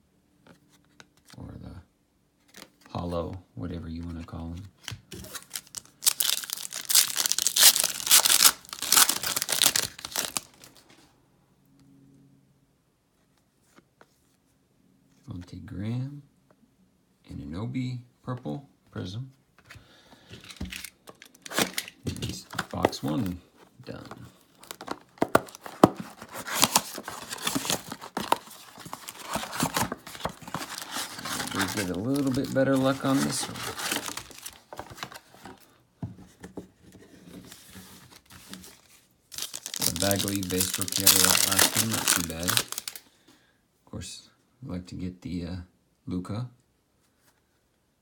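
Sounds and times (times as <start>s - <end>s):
plastic wrapper crinkling and tearing: 4.8s - 10.8s, 20.4s - 23.4s, 24.1s - 35.5s, 38.1s - 43.1s.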